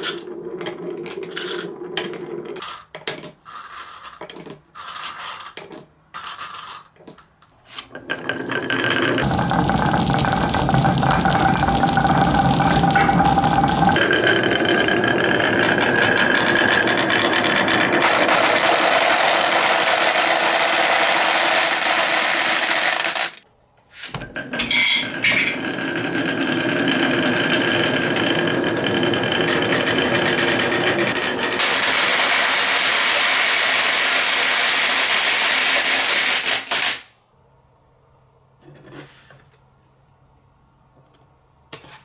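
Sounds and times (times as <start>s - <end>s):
rattling: 12.8s - 23.4s, 24.2s - 32.8s
toy truck electric motor and gears: 14.0s - 23.4s, 25.5s - 37.0s.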